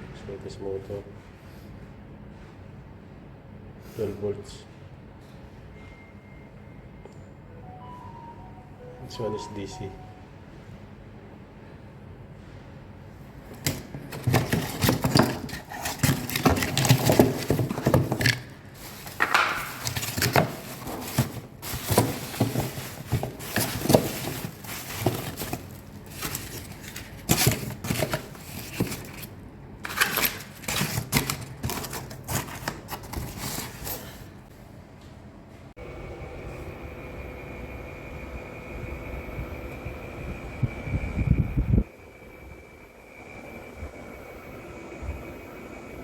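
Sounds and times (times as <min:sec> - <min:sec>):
parts clicking and rattling: 0:13.5 - 0:34.0.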